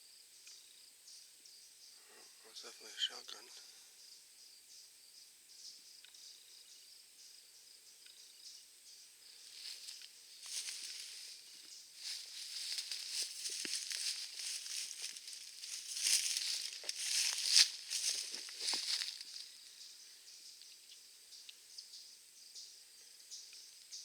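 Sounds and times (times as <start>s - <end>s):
dry leaves rustling and crackling: 9.5s - 19.6s.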